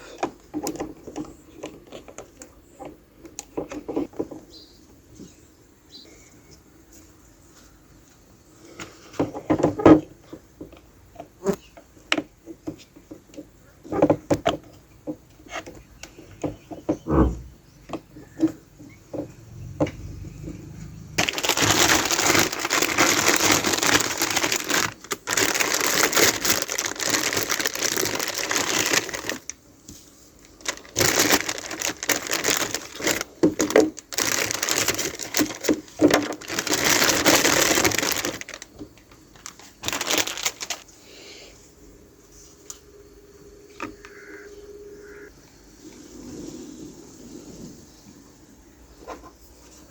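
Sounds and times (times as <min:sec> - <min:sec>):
plastic packaging crinkling: 0:21.2 - 0:29.6, 0:30.4 - 0:40.9.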